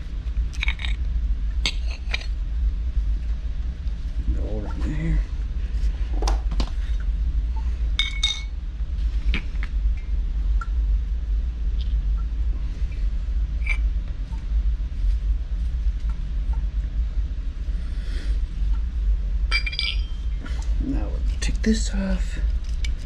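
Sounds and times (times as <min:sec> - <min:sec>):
steady low rumble: 0:00.0 - 0:23.0
metal parts and tools clinking: 0:19.5 - 0:20.3.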